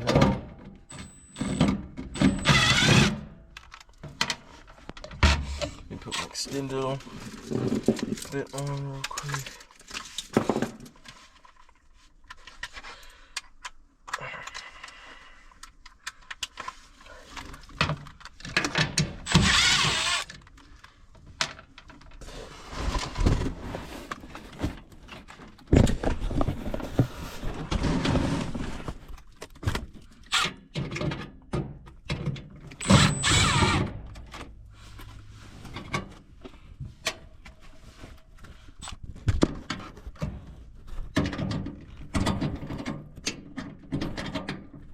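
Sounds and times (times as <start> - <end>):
cordless drill backing out screws: 0.9 - 3.1, 19.3 - 20.4, 32.8 - 33.8.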